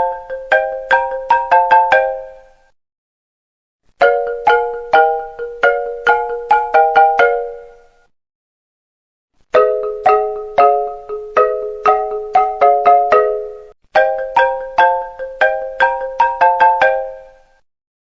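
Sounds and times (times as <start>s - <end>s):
phone ringtone melody: 4.0s - 7.9s, 9.5s - 17.4s.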